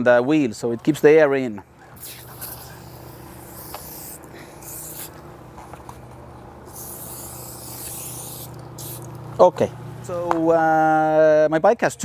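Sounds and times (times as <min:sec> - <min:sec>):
aerosol spray hissing: 0:02.0 - 0:09.4.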